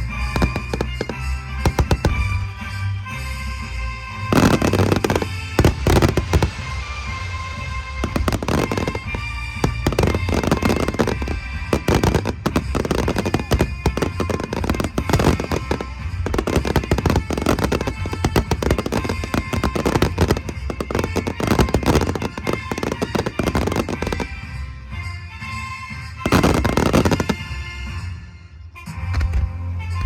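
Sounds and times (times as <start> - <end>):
fireworks bursting and crackling: 0.0 - 28.2
music playing: 0.0 - 30.0.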